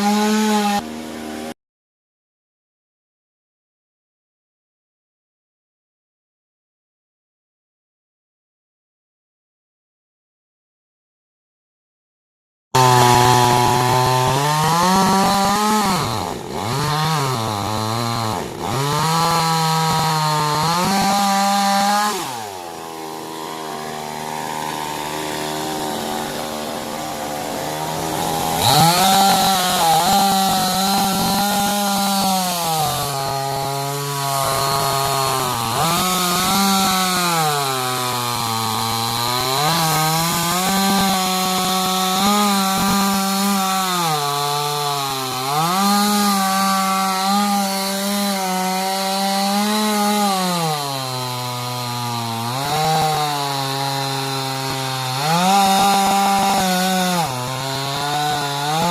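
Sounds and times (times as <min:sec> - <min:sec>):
chainsaw cutting wood: 0:00.0 - 0:01.6, 0:12.8 - 0:58.9.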